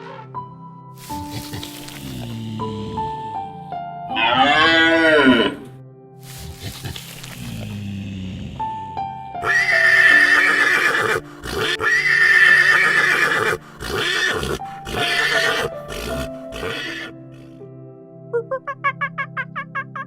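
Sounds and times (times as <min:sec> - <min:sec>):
background music: 0:00.0 - 0:20.0
horse neighing: 0:04.1 - 0:05.7, 0:09.4 - 0:17.5.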